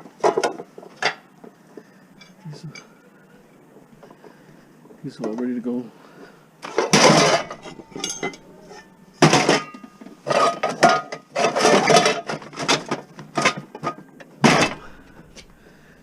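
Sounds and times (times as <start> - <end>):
scrap metal clanking and scraping: 6.6 - 15.6.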